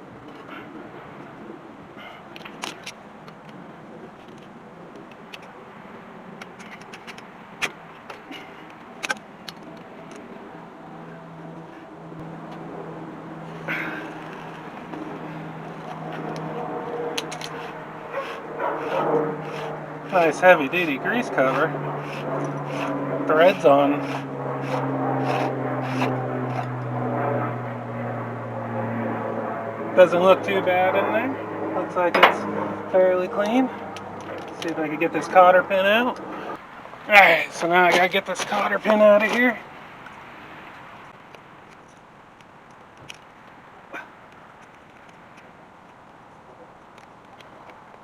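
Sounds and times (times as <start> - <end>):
low engine drone: 0.0 - 39.7
steady low hum: 0.0 - 40.0
faint scrapes: 13.5 - 26.8
pliers clinking on metal cap: 17.2 - 17.6, 32.1 - 32.5.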